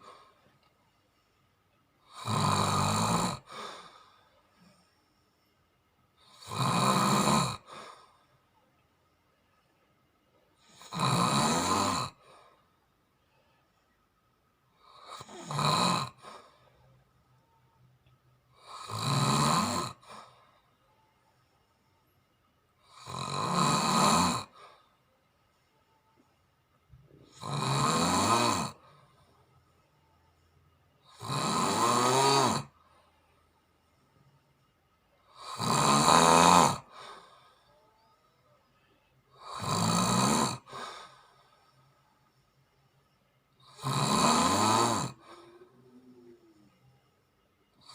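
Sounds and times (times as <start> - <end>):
person snoring: 2.0 - 4.7, 6.2 - 8.1, 10.6 - 12.6, 14.8 - 16.6, 18.5 - 20.4, 22.8 - 24.8, 27.1 - 29.2, 31.0 - 32.8, 35.2 - 37.4, 39.3 - 41.5, 43.6 - 46.9.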